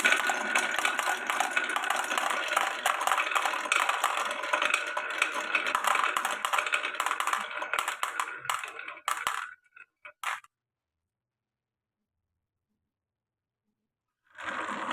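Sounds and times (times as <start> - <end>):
glass marbles rolling on wooden track: 0.0 - 10.5, 14.4 - 14.9.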